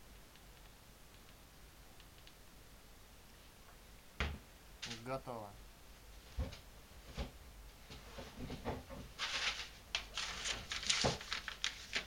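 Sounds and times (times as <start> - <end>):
paper rustling: 9.2 - 12.0.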